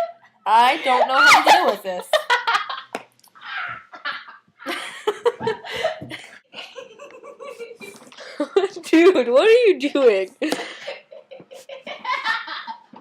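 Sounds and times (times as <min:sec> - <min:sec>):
woman laughing uncontrollably: 0:01.0 - 0:08.8.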